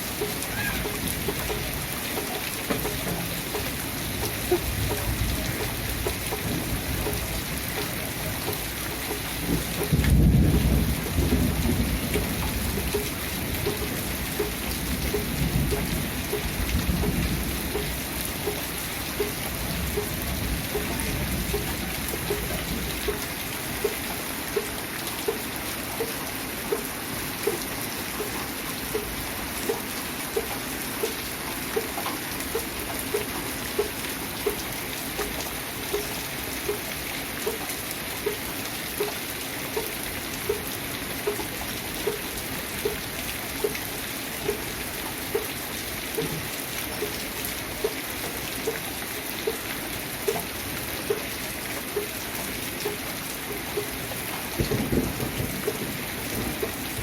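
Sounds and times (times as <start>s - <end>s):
steady rain: 0.0s - 57.0s
water dripping: 0.0s - 57.0s
thunder rumbling: 2.8s - 23.2s, 54.6s - 57.0s.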